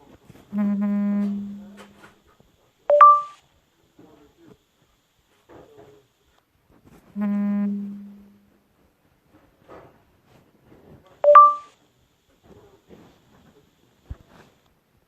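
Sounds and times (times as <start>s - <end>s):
phone low buzz: 0.3s - 2.1s, 7.0s - 8.6s
brief higher beep: 2.9s - 3.4s, 11.2s - 11.7s.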